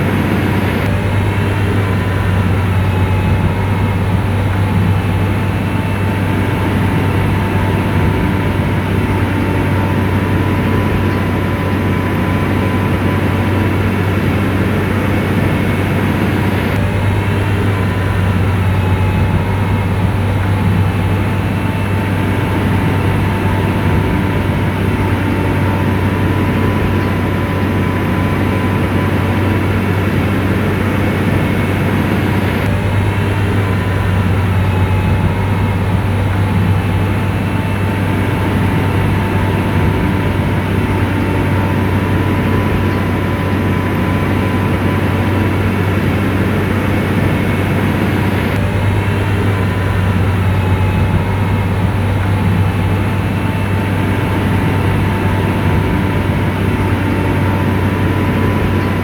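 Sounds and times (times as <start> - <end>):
bulldozer diesel engine humming: 0.0 - 59.0
thin engine whine: 0.0 - 59.0.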